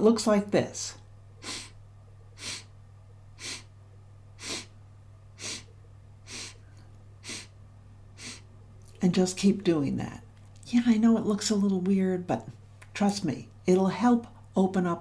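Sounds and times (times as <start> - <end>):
sharp sniffs through the nose: 1.4 - 1.8, 2.4 - 2.7, 3.4 - 3.7, 4.4 - 4.7, 5.4 - 5.7, 6.3 - 6.6, 7.2 - 7.5, 8.2 - 8.5.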